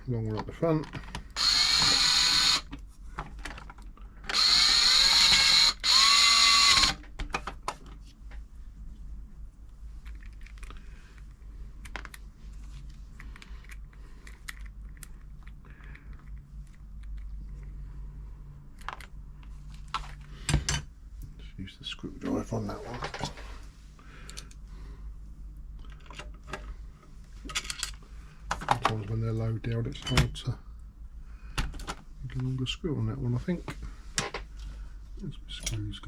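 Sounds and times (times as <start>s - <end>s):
electric screwdriver whirring: 1.4s - 2.7s, 4.3s - 7.0s.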